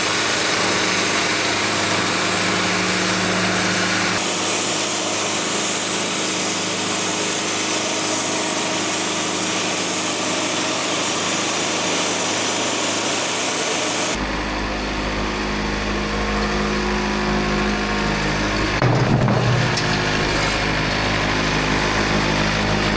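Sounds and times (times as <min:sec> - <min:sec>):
saw hissing through log: 0:00.0 - 0:14.2
sawmill engine running: 0:00.0 - 0:22.9.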